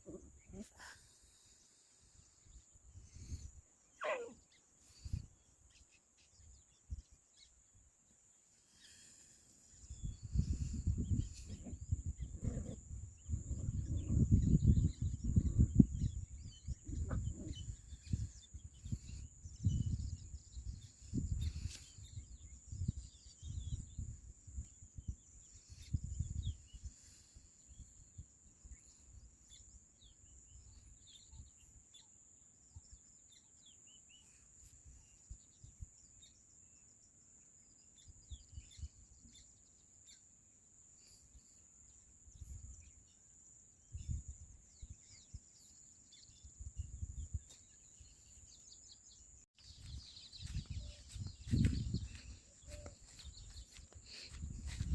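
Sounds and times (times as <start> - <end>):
faint bird chirps: 0.0 - 7.8, 8.4 - 54.9
wind buffeting microphone: 9.8 - 26.9, 43.9 - 45.4, 49.6 - 54.9.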